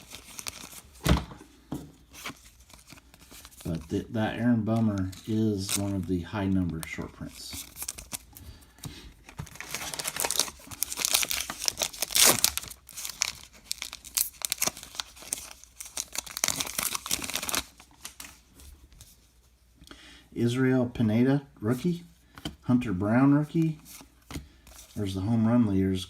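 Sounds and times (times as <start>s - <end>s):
card pack wrapper tearing and crinkling: 0.0s - 1.0s, 2.1s - 8.4s, 9.2s - 18.4s.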